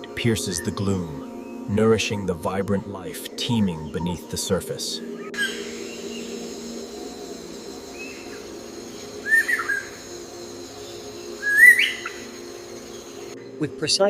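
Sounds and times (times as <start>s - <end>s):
bird whistled calls: 5.2s - 10.1s, 10.8s - 13.8s.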